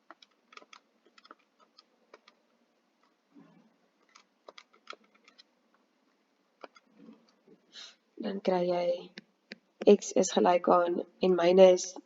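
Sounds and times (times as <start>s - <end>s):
calculator buttons clicking: 4.0s - 5.5s.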